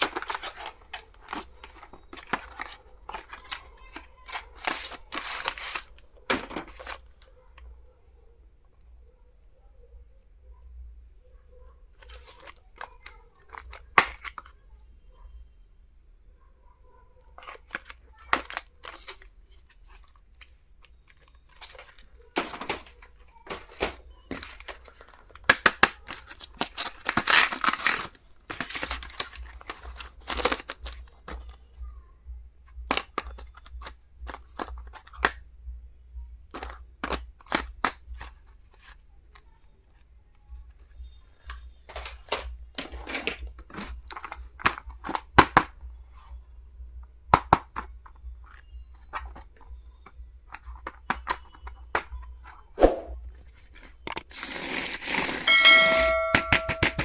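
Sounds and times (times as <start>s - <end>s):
packaging crinkling and tearing: 0.0s - 7.2s, 17.4s - 31.6s, 53.3s - 55.5s.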